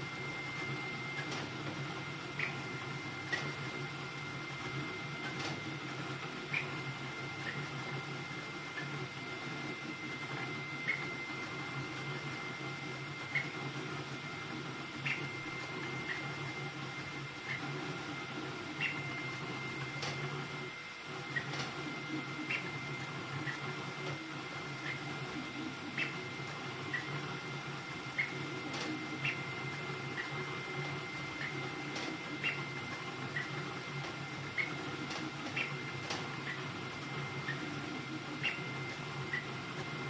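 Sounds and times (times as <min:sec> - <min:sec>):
three-d printer humming: 0:00.0 - 0:40.0.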